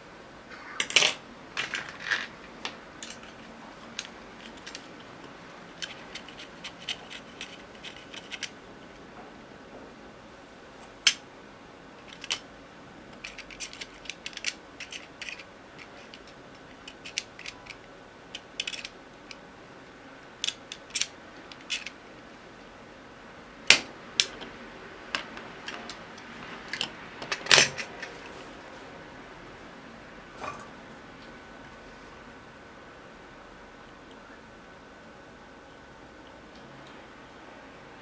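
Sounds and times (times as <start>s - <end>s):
hand tools clicking on circuit board: 13.2s - 19.4s.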